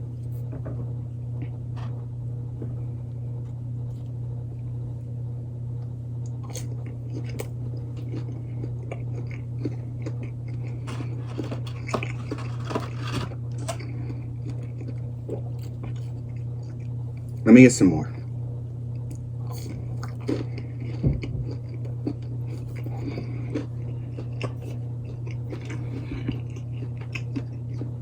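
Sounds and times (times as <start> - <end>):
steady low hum: 0.0 - 28.0
person chewing crunchy food: 6.2 - 17.4, 18.9 - 28.0.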